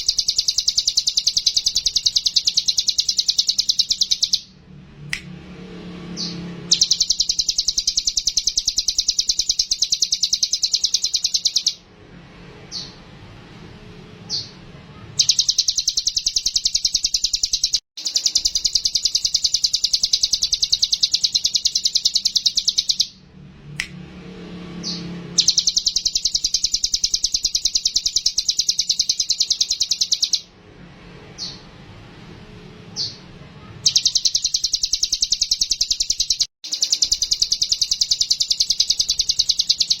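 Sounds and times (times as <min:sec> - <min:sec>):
bird trilling: 0:00.0 - 0:04.6, 0:06.2 - 0:11.8, 0:15.2 - 0:23.2, 0:24.8 - 0:30.5, 0:33.8 - 0:40.0.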